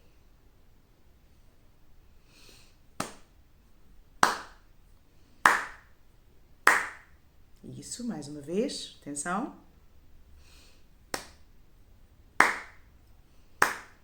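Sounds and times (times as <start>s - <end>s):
slow hand claps: 3.0s - 3.4s, 4.2s - 4.7s, 5.4s - 6.0s, 6.6s - 7.2s, 11.1s - 11.5s, 12.4s - 12.9s, 13.6s - 14.0s.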